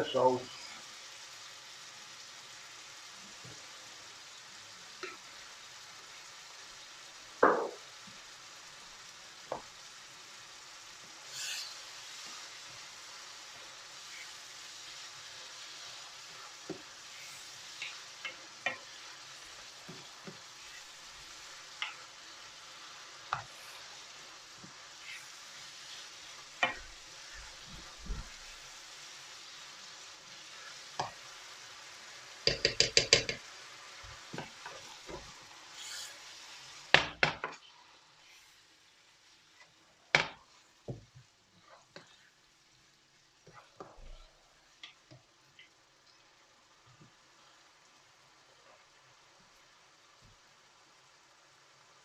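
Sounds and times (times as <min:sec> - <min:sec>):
food sizzling in a frying pan: 0:00.0 - 0:52.0
utensil knocking against a pan: 0:32.5 - 0:33.4.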